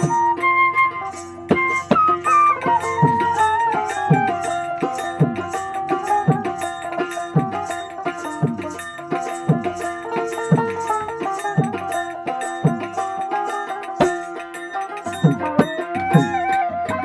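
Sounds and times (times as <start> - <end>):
hand drum strokes: 0.0 - 17.0
plucked string melody: 0.0 - 17.0.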